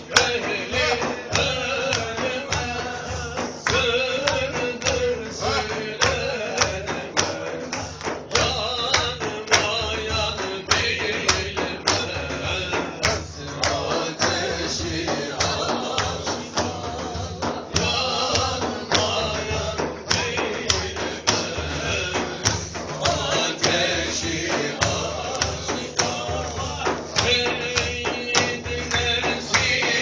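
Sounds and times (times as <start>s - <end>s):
frame drum with jingles: 0.0s - 30.0s.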